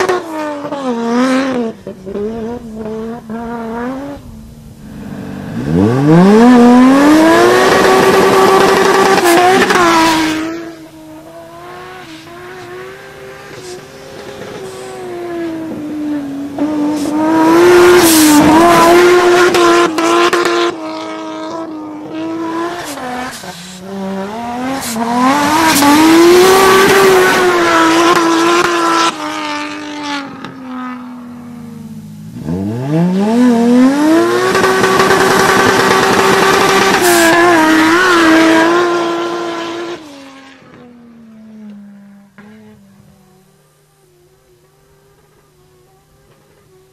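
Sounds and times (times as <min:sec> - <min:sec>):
car engine revving hard: 0:00.0 - 0:40.8
tyre noise hiss: 0:01.5 - 0:20.6, 0:22.5 - 0:29.4, 0:30.3 - 0:39.5.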